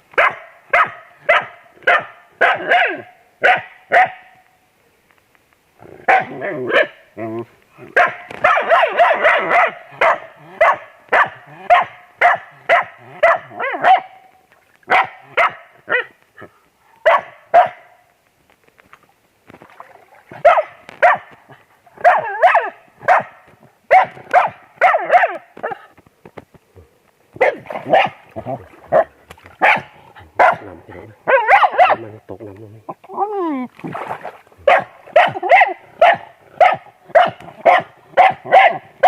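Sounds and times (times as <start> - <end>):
dog barking and yipping: 0.2 - 4.3, 6.1 - 7.0, 7.9 - 14.2, 14.9 - 16.1, 17.0 - 17.9, 20.4 - 21.4, 22.0 - 25.8, 27.4 - 28.2, 28.9 - 32.1, 34.6 - 39.0.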